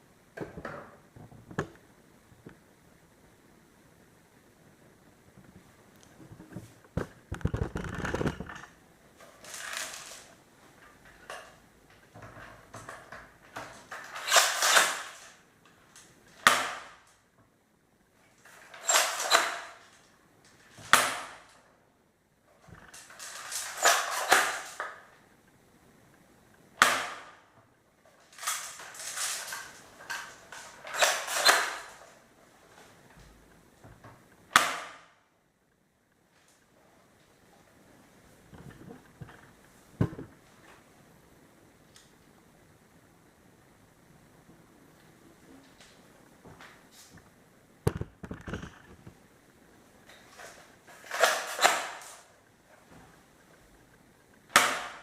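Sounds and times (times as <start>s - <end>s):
airsoft shotgun shots: 26.8s - 27.4s, 34.5s - 35.1s.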